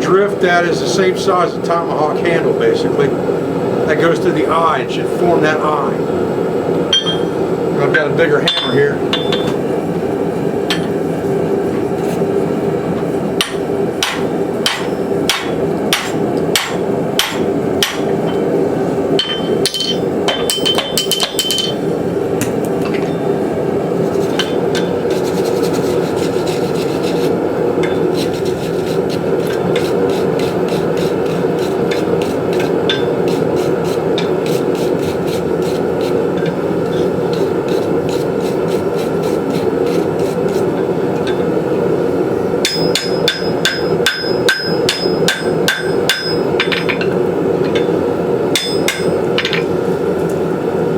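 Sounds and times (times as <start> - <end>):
hammer blows on hot steel: 42.6 - 46.7.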